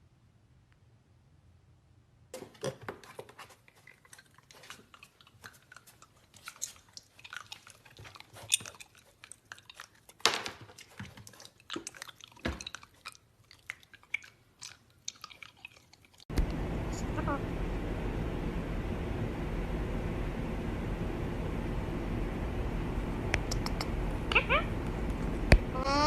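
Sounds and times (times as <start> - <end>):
chewing and crunching: 2.4 - 16.3.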